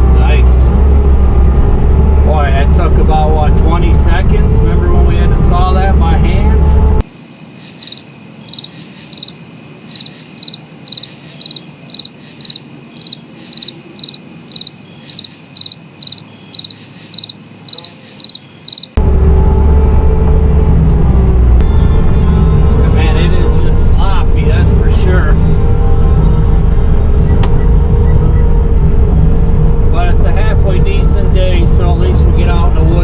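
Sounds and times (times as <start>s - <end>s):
high evenly spaced chirps: 7.6s - 19.0s.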